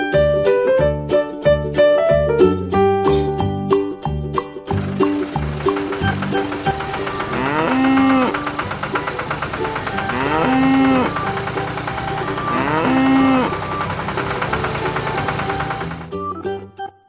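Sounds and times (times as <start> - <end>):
light background music: 0.0 - 17.0
cow mooing: 7.0 - 8.5, 9.9 - 11.2, 12.4 - 13.6.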